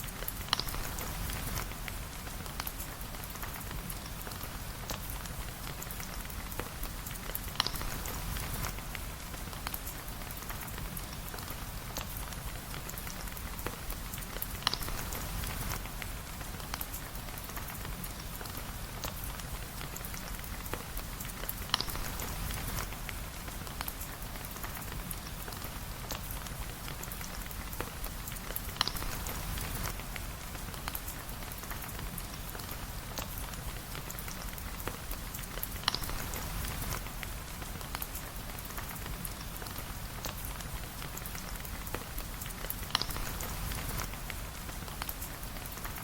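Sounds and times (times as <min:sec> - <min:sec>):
steady rain falling: 0:00.0 - 0:46.0
small scattered ticks: 0:26.1 - 0:30.0, 0:30.8 - 0:46.0.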